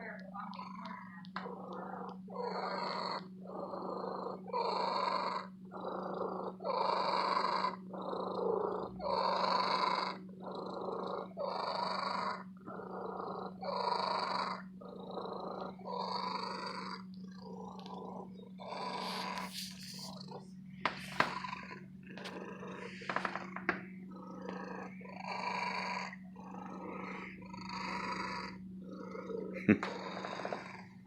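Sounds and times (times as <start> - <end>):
cat purring: 0.0 - 31.0.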